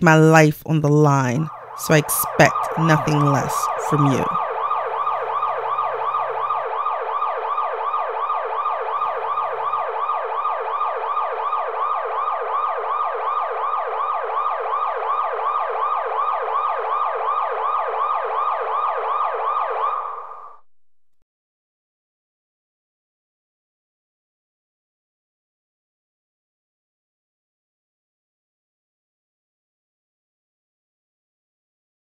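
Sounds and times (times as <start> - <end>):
emergency siren yelping: 0.8 - 20.6.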